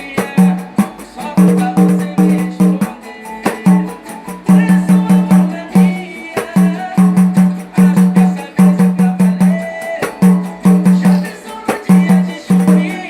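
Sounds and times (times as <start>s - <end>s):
background song music: 0.0s - 13.0s
pandeiro bass-tone strokes: 0.0s - 13.0s
pandeiro jingle hits: 0.0s - 13.0s.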